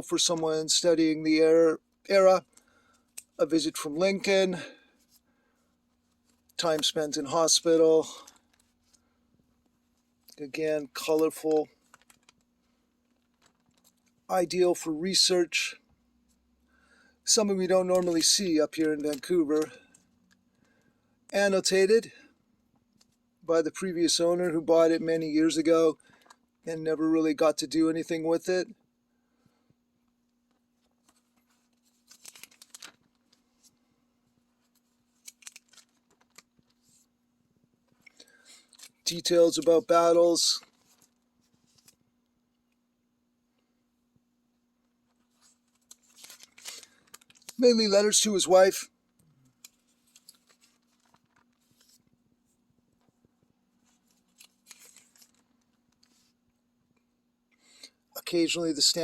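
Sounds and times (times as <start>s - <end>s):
faint steady hum: 0.0s - 59.0s
faint rustles and clicks: 7.7s - 10.4s, 11.0s - 14.3s, 29.4s - 40.0s, 40.6s - 42.8s, 43.5s - 47.6s, 49.0s - 57.9s
paper rustling: 30.8s - 33.8s, 34.6s - 37.1s, 45.1s - 47.6s, 49.6s - 52.2s, 53.8s - 56.4s.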